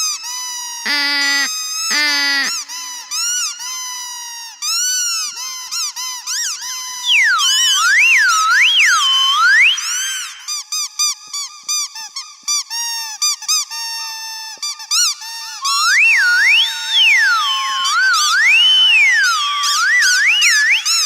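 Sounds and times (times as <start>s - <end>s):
high-pitched squeaks: 15.6s - 21.0s.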